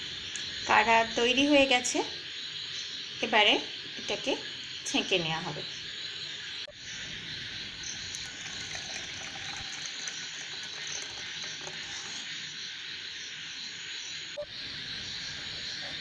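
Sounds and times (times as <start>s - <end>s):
liquid trickling and splashing: 7.9s - 12.4s.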